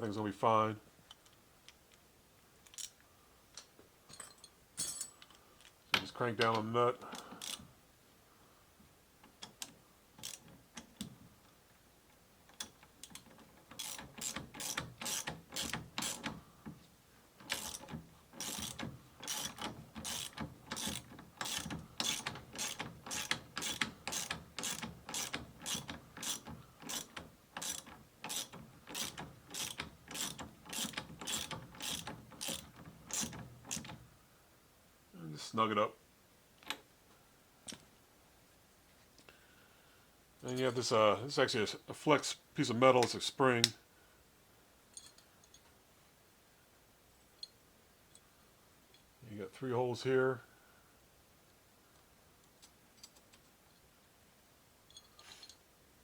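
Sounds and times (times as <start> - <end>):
ratchet wrench clicking: 7.4 - 7.6, 9.5 - 11.1, 12.6 - 16.4, 17.4 - 33.9.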